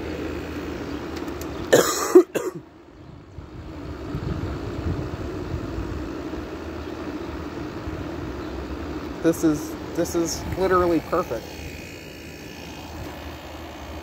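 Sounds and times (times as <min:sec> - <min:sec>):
air conditioner humming: 0:00.0 - 0:14.0
person coughing: 0:01.7 - 0:02.6.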